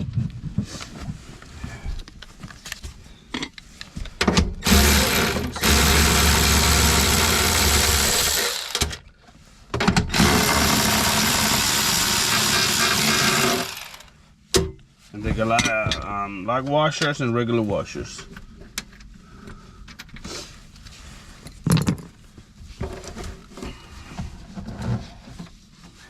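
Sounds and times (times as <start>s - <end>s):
power drill running: 4.6s - 9.0s, 10.1s - 14.1s.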